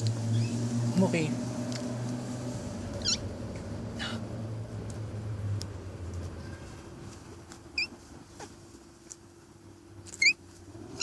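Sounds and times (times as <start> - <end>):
cat squeaking: 3.0 - 3.3, 7.8 - 8.0, 10.1 - 10.4.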